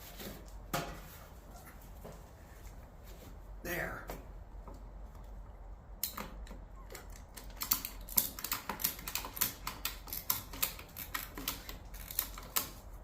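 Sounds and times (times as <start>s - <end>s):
sharp clicks from tools: 6.0s - 12.8s.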